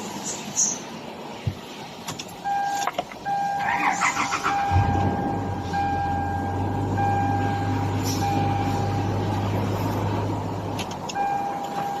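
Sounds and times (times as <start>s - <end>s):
car engine idling: 1.7s - 12.0s
electronic warning beeps: 2.4s - 9.2s, 11.1s - 12.0s.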